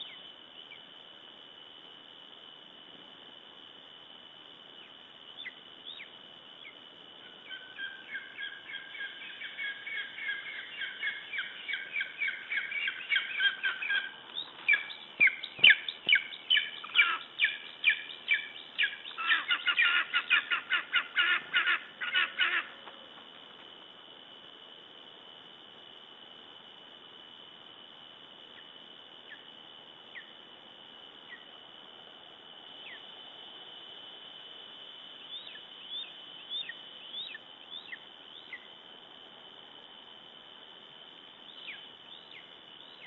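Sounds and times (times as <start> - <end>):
animal high-pitched calls: 7.4 - 22.8.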